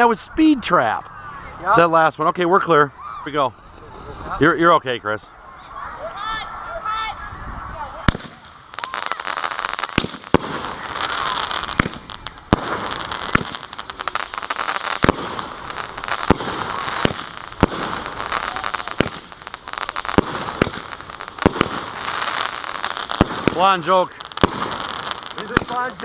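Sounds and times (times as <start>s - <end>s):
firework crackling and hissing: 3.5s - 4.6s, 7.9s - 26.0s
firework bangs: 8.0s - 26.0s.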